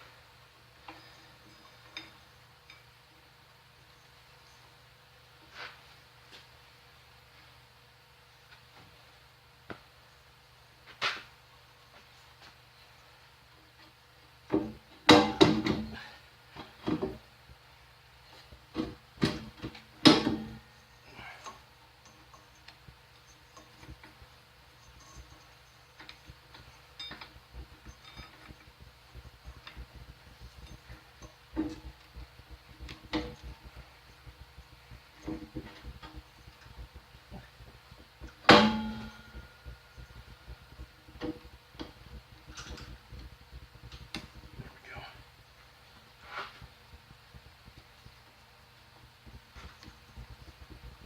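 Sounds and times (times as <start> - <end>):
metal parts knocking and clinking: 21.4 - 40.3.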